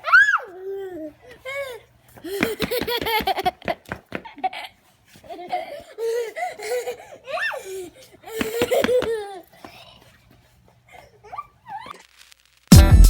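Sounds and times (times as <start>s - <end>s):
person laughing: 2.2s - 7.1s, 8.3s - 9.4s.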